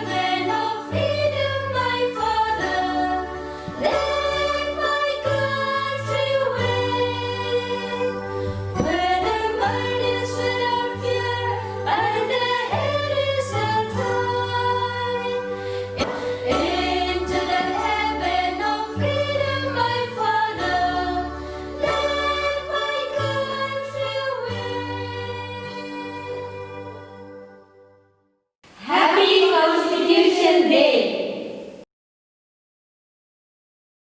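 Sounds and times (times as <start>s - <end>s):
choir singing: 3.8s - 8.0s, 28.8s - 31.8s.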